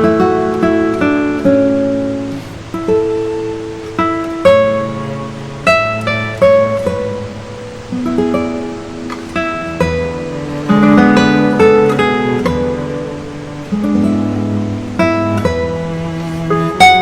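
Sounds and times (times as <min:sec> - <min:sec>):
acoustic guitar chords: 0:00.0 - 0:17.0.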